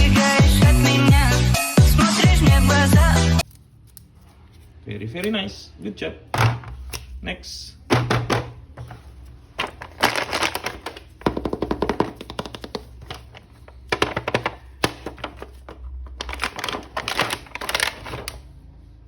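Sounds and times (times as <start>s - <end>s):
plastic packaging crinkling and clicking: 9.5s - 18.5s.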